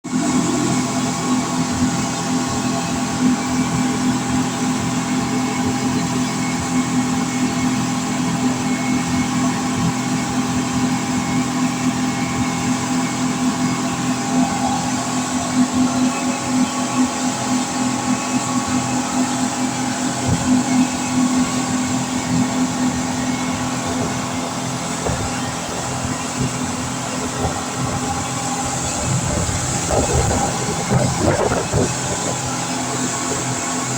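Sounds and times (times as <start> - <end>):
rushing water: 0.1 - 33.9
speedboat engines droning: 0.1 - 33.9
wind noise: 19.7 - 33.9.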